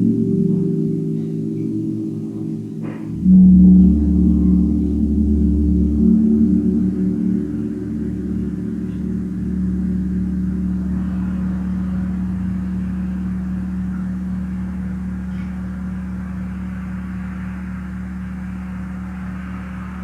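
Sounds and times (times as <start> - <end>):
soft high shimmer: 0.0 - 20.0
tam-tam gong throbbing hum: 0.0 - 20.0.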